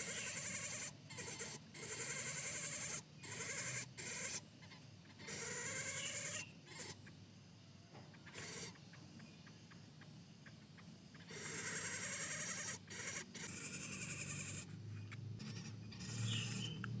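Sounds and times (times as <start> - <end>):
bird rasping call: 0.0 - 7.1, 11.2 - 14.7, 15.4 - 16.8.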